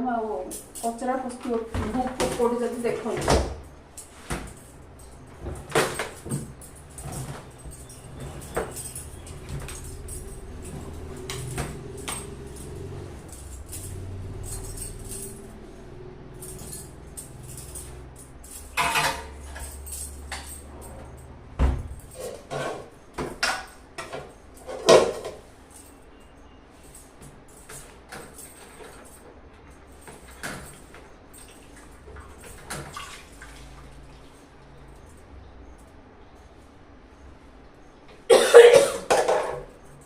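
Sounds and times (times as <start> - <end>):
washing machine humming: 0.0 - 26.6, 27.2 - 40.0
washing machine knocks and rattles: 1.5 - 3.7, 5.2 - 15.0, 21.3 - 22.2.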